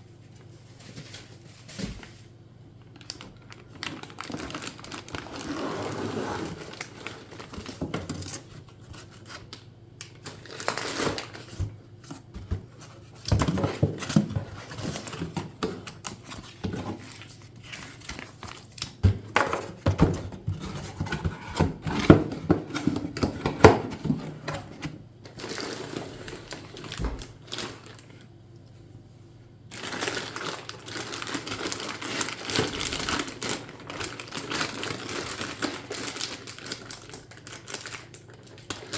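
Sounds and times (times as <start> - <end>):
packaging crinkling and tearing: 2.8 - 19.8, 25.3 - 28.3, 29.7 - 38.9.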